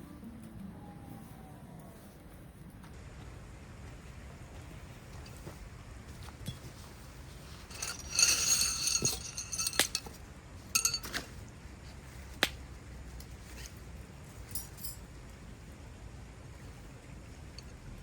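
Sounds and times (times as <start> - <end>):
camping gear clinking: 6.3 - 11.4
ringing metal clink: 7.6 - 11.2.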